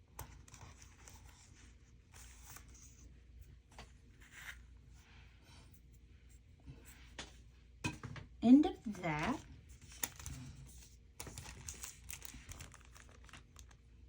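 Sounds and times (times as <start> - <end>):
paper handling: 8.8 - 13.8.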